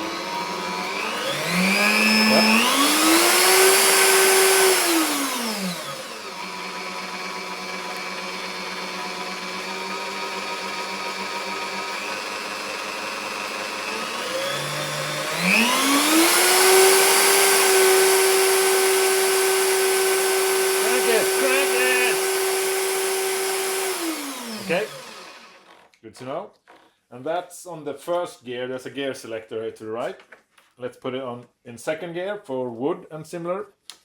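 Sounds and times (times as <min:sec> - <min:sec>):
bench drill motor whining: 0:00.0 - 0:26.0.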